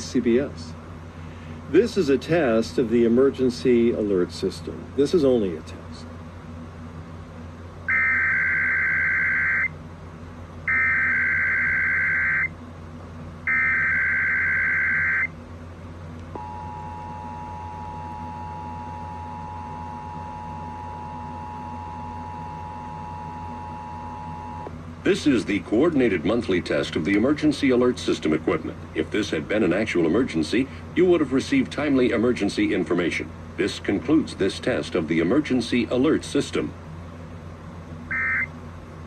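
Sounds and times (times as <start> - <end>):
two-tone attention signal: 38.1 - 38.5.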